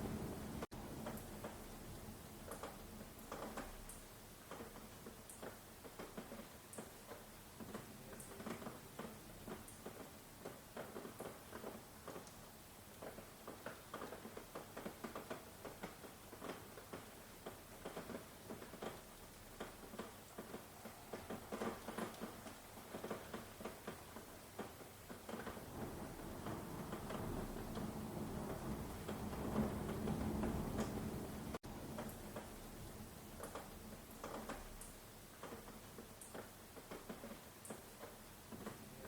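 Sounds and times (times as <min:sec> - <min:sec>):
thunder rumble: 0:00.0 - 0:01.0, 0:25.5 - 0:32.0
raindrops tapping: 0:00.0 - 0:39.0.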